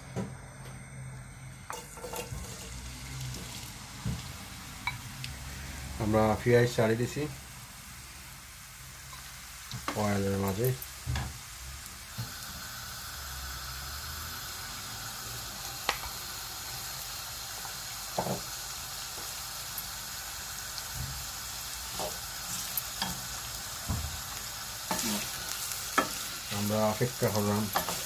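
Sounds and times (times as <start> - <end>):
onions sizzling in oil: 1.6 - 28.0.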